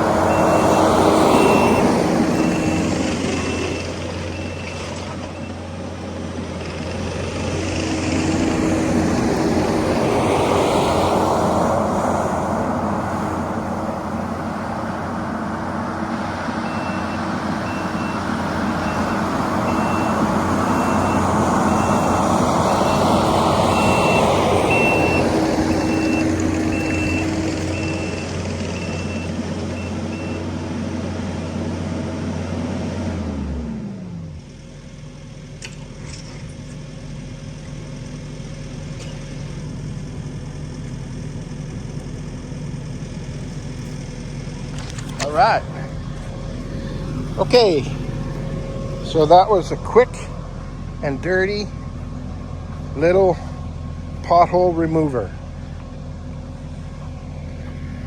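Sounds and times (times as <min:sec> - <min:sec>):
diesel engine under load: 0:00.0 - 0:58.0
backup alarm beeping: 0:00.2 - 0:05.6, 0:16.6 - 0:30.5.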